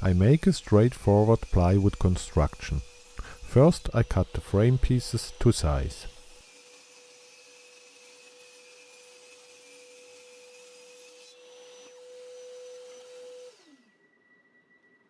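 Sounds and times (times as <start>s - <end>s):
saw blade spinning down: 0.0s - 6.7s, 10.6s - 14.0s
power saw whining: 0.0s - 14.3s.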